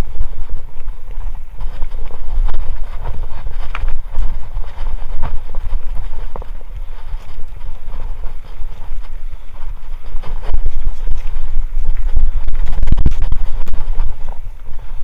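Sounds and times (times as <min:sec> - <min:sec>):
bike knocking and rattling: 0:00.0 - 0:15.0
wind and tyre rumble: 0:00.0 - 0:15.0.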